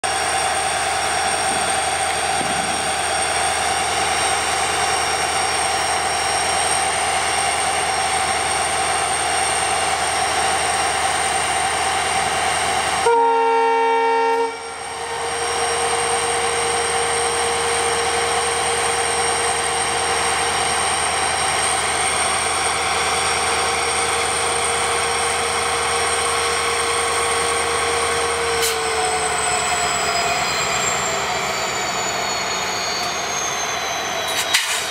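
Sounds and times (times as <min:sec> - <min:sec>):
diesel locomotive engine whining: 0:00.0 - 0:34.9
locomotive horn blast: 0:13.0 - 0:15.2.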